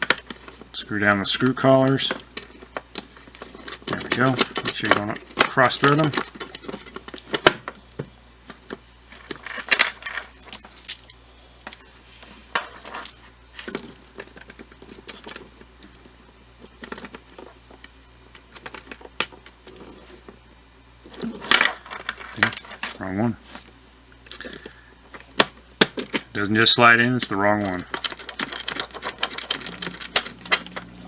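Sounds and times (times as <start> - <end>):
metal connectors clinking: 0.0 - 7.6, 9.2 - 11.9, 21.1 - 23.0, 27.2 - 31.0.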